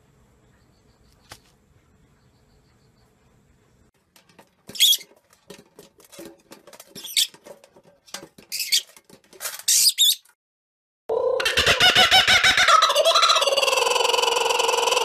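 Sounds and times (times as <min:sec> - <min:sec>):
small animal squeaking: 0:04.8 - 0:05.0.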